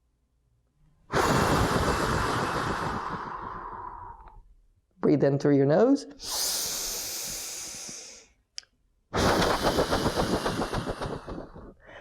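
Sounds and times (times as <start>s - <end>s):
fluttering exhale through mouth: 1.1s - 4.4s, 6.2s - 8.3s, 9.2s - 12.0s
person inhaling through nose: 1.1s - 4.4s, 6.2s - 8.4s, 9.2s - 12.0s.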